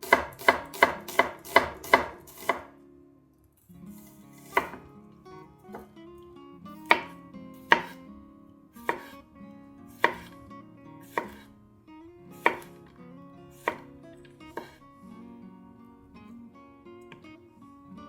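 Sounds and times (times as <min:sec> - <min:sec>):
knife cutting on cutting board: 0:04.0 - 0:04.9, 0:06.8 - 0:08.0, 0:08.8 - 0:09.2, 0:09.9 - 0:10.4, 0:11.0 - 0:11.5, 0:12.4 - 0:12.8, 0:13.6 - 0:13.9, 0:14.5 - 0:14.8.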